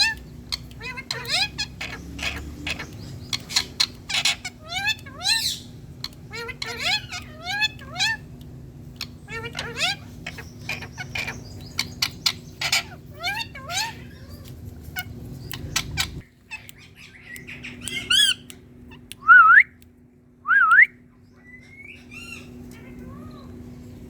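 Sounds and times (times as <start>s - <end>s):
parrot squawks: 0.0s - 5.7s, 6.3s - 8.3s, 9.0s - 14.4s
parrot clicks and chirps: 0.0s - 20.1s.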